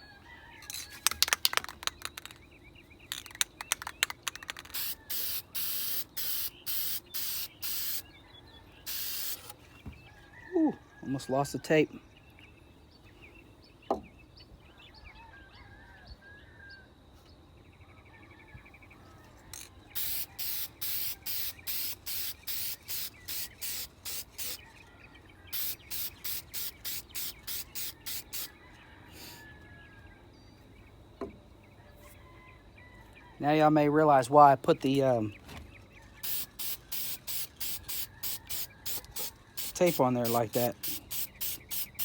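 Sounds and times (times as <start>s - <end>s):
aerosol spray bursts: 4.7s - 8.1s, 8.9s - 9.5s, 20.0s - 24.6s, 25.5s - 28.5s, 36.2s - 42.0s.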